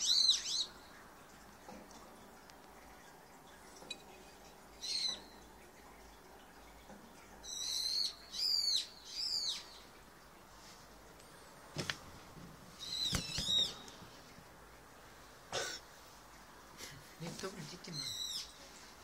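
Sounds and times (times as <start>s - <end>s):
bird calling: 12.8s - 13.9s.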